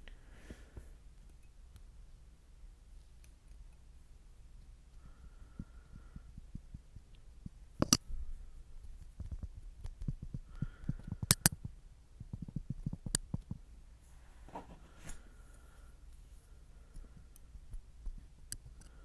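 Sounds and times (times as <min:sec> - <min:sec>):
sharp clicks: 0:11.0 - 0:11.6
soft taps and rubs on microphone: 0:12.2 - 0:15.4.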